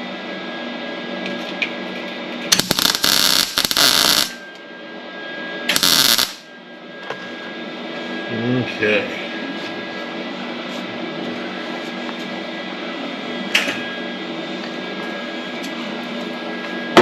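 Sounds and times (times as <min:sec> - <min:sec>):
welder crackling bursts: 0:02.5 - 0:04.4, 0:05.7 - 0:06.5.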